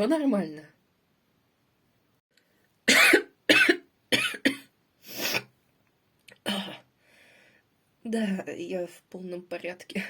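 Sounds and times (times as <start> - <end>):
person coughing: 2.9 - 4.7.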